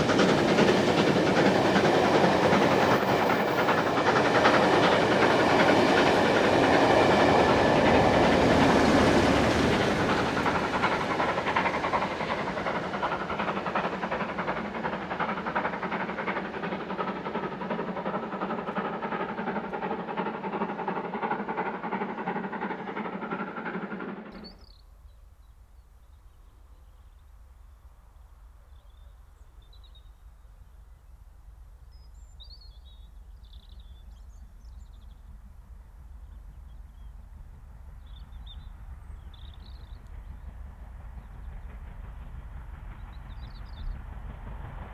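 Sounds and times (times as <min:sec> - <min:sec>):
steam train passing: 0:00.0 - 0:24.6, 0:35.4 - 0:44.9.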